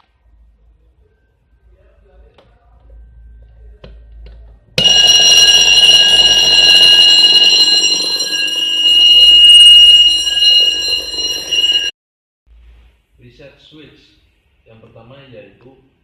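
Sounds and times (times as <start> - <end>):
fire alarm bell ringing: 4.8 - 11.9.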